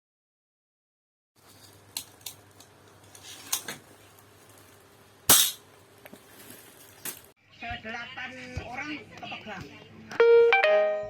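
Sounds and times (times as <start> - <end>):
pistol gunshot: 5.3 - 5.6.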